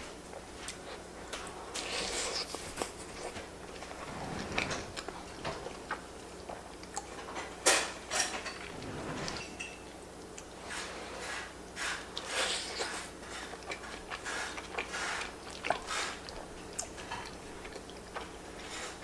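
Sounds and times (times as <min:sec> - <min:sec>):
person chewing food: 0:00.3 - 0:04.0, 0:04.6 - 0:07.7, 0:10.2 - 0:19.0.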